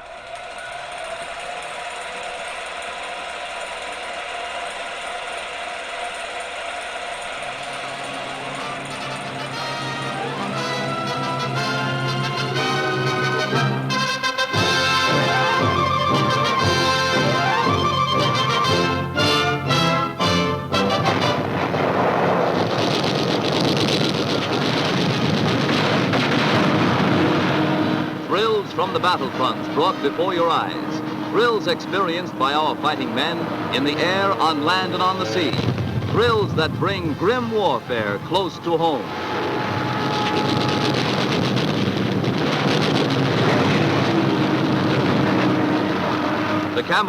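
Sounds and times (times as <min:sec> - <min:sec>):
dense rushing noise: 0:20.8 - 0:47.0
mechanical engine-like roar: 0:25.8 - 0:37.2, 0:42.1 - 0:47.0.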